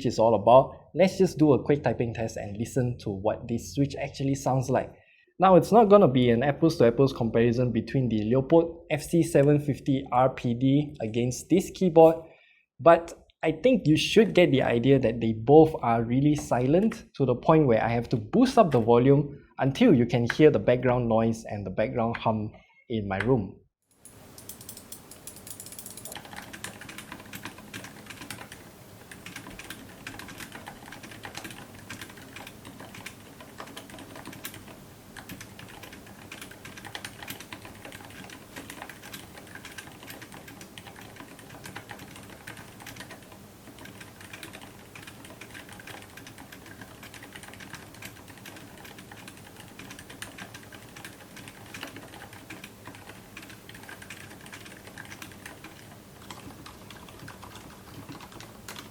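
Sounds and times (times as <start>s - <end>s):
room background hum: 0.0s - 58.9s
fast typing on keyboard: 25.4s - 58.9s.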